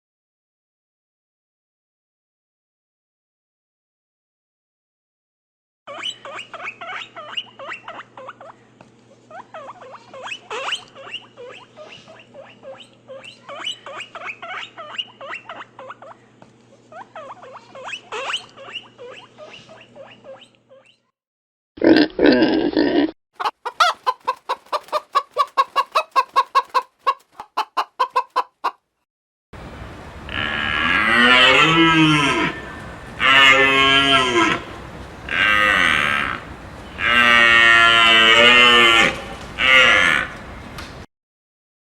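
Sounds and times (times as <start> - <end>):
cattle mooing: 30.2 - 40.5.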